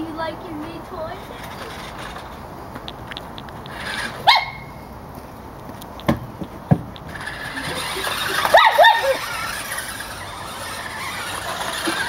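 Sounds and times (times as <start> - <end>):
toy car electric motor: 1.2 - 2.4, 3.7 - 4.3, 7.0 - 12.0
short high squeals: 7.1 - 12.0.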